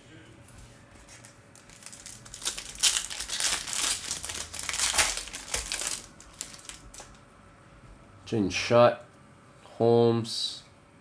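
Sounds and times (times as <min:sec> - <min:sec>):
foil wrapper crinkling: 0:01.0 - 0:07.2.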